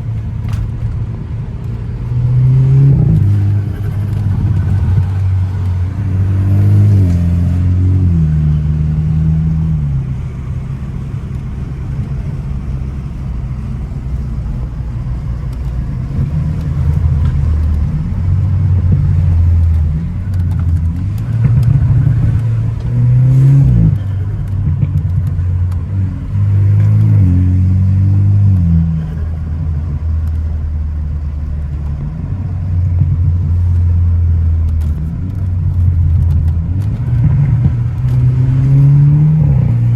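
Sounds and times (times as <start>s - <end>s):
car engine accelerating: 0.0s - 39.9s.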